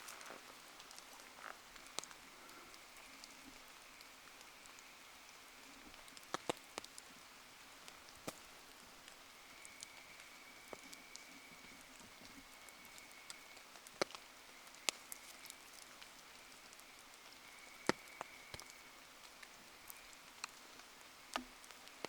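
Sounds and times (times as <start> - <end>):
rain pattering: 0.0 - 22.0
bonfire pops: 6.0 - 7.0, 7.9 - 10.0.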